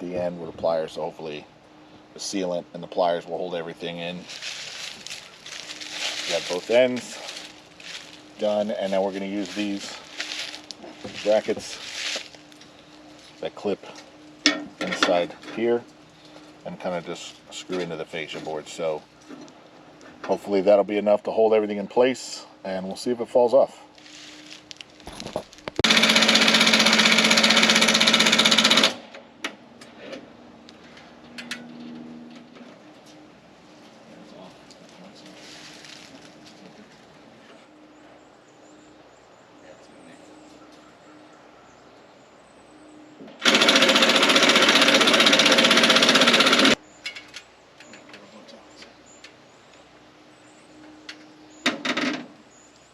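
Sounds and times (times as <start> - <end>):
power screwdriver driving screw: 43.4 - 46.8.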